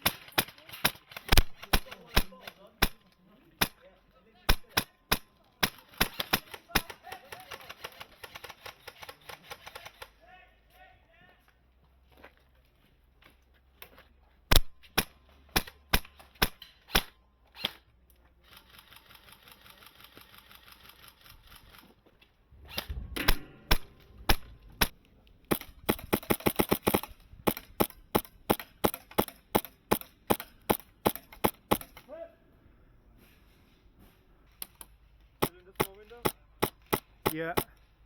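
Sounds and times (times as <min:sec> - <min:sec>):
airsoft guns firing: 0:00.0 - 0:03.0, 0:04.5 - 0:10.2, 0:14.5 - 0:17.2, 0:22.8 - 0:32.0, 0:35.4 - 0:37.8.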